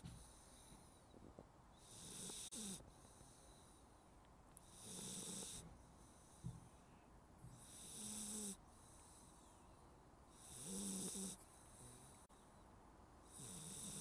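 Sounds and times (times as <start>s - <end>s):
puppy snoring: 1.8s - 3.6s, 4.6s - 6.5s, 7.5s - 9.3s, 10.3s - 12.3s, 13.3s - 14.0s.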